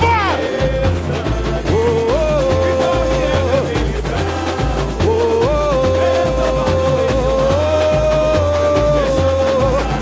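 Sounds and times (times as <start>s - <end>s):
deep bass beat: 0.0s - 10.0s.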